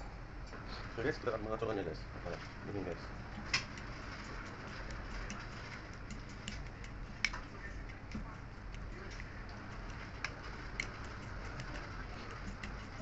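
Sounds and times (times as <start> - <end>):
utensil tapping against bowl: 3.3 - 13.0.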